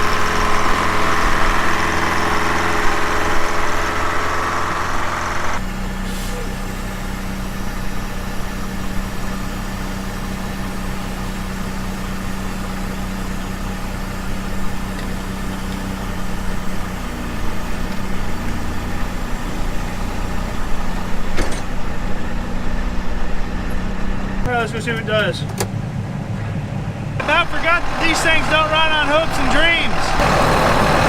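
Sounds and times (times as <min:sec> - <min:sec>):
large engine idling: 0:00.0 - 0:31.0.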